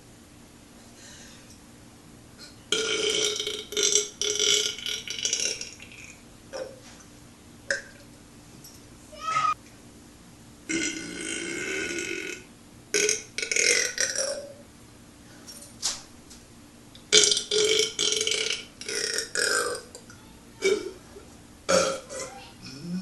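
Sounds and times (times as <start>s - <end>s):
man belching: 2.8s - 6.7s, 10.7s - 14.6s, 17.1s - 19.9s, 20.6s - 21.0s, 21.7s - 23.0s.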